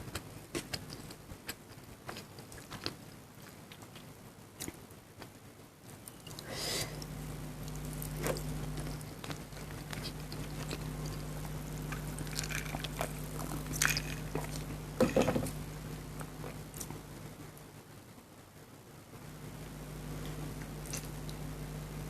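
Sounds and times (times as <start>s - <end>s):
chewing: 0.0s - 5.3s, 6.0s - 15.2s, 20.6s - 21.4s
steady low hum: 0.0s - 22.0s.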